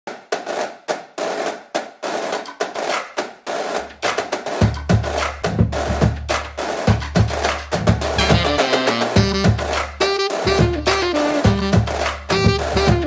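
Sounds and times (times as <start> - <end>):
snare drum beat: 0.1 - 13.0
deep bass: 8.1 - 8.6, 10.5 - 13.0.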